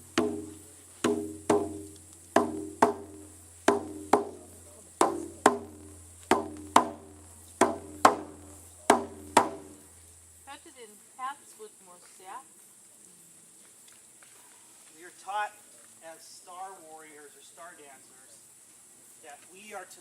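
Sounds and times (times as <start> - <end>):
drum beating heartbeat rhythm: 0.0 - 9.9.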